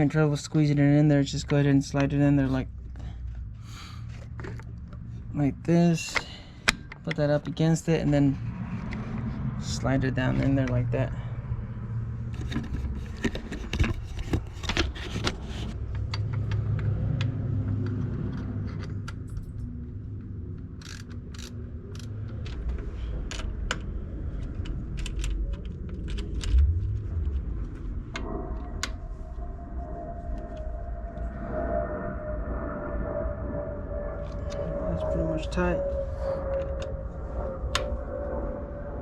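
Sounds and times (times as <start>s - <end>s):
low rumble: 0.0s - 39.0s
steady hum: 19.2s - 39.0s.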